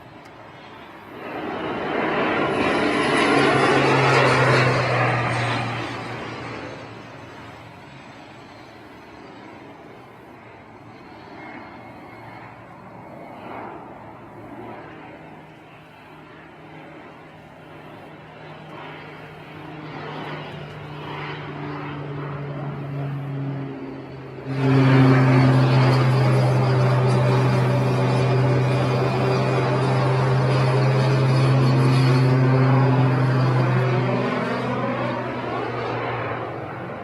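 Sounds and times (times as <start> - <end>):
propeller airplane engine droning: 0.0 - 37.0.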